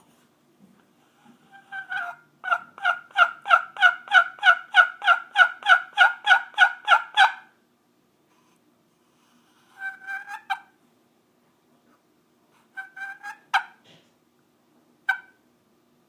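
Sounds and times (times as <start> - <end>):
turkey call yelps: 1.5 - 7.6, 9.8 - 10.7, 12.7 - 13.8, 15.1 - 15.4.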